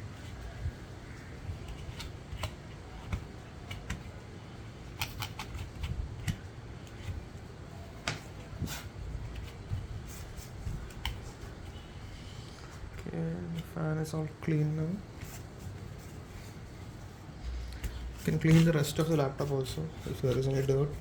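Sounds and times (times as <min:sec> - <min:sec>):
small clicks and scrapes: 0:04.9 - 0:07.2.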